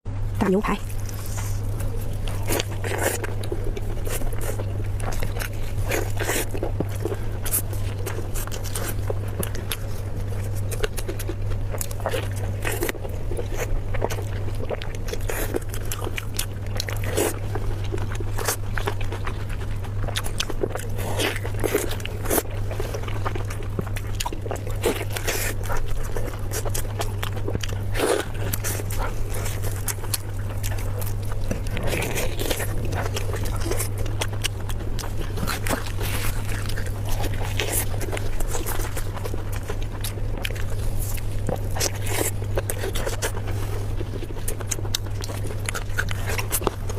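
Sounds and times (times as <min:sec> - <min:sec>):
steady low hum: 0:00.1 - 0:46.9
person biting and chewing food: 0:00.8 - 0:46.9.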